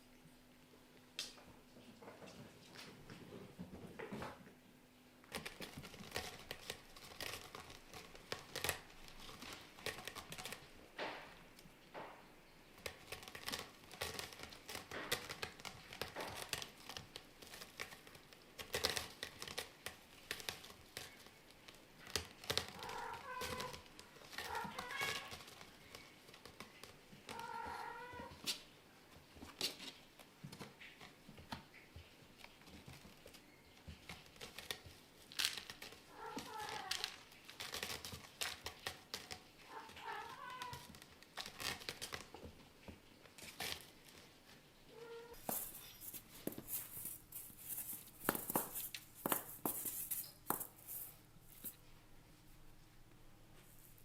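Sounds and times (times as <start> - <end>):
small clicks and crackles: 5.2 - 51.9
kitten meowing: 27.3 - 28.3.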